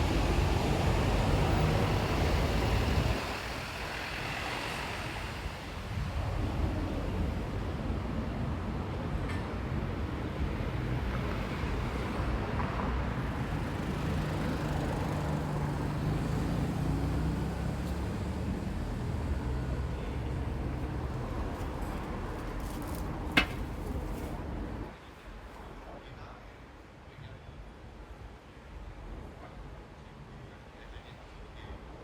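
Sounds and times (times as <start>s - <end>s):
street traffic noise: 0.0s - 32.0s
vehicle engine passing: 13.7s - 24.9s.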